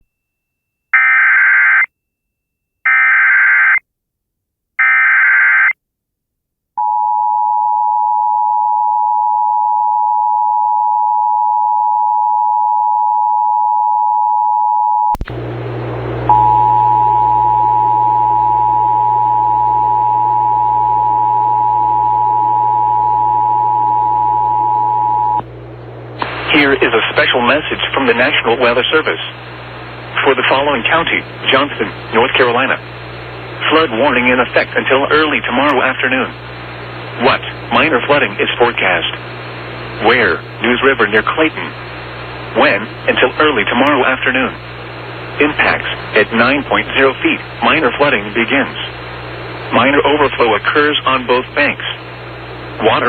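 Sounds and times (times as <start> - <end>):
low hum: 6.8 - 53.0
two-tone attention signal: 16.3 - 25.4.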